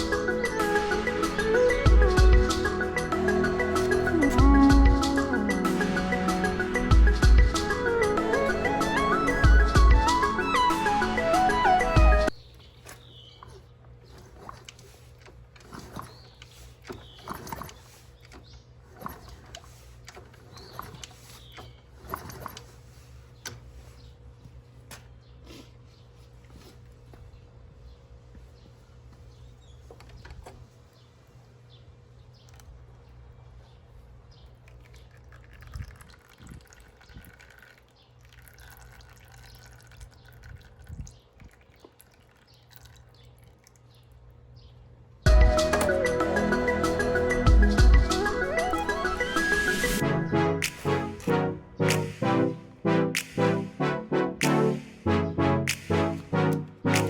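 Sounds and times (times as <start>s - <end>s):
faint birdsong: 7.9s - 51.0s
oil dripping into pan: 34.7s - 43.9s.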